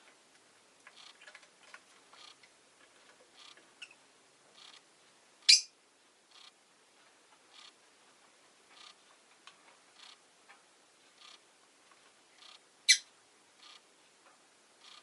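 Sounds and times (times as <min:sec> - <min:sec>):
bird sharp loud chirp: 0:05.5 - 0:05.7.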